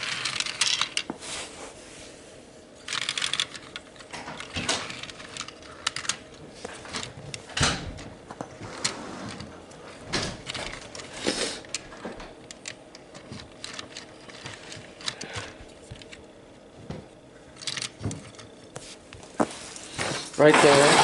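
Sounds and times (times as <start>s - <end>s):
plastic model train cars handled: 0.0s - 1.1s, 2.9s - 7.4s, 12.5s - 16.2s, 17.6s - 18.5s.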